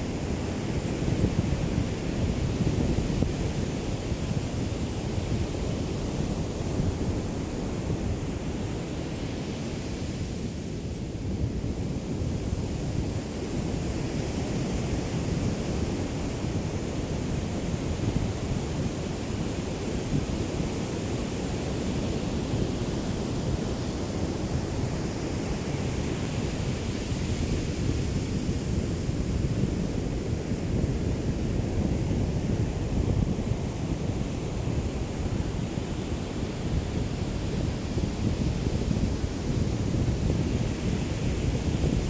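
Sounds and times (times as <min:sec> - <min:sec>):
wind rumble on microphone: 0:00.0 - 0:42.0.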